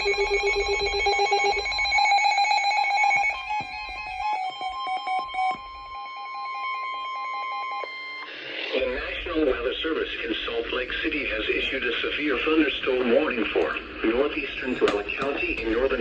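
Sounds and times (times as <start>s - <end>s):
stepping electronic alert beeps: 0.0s - 4.1s.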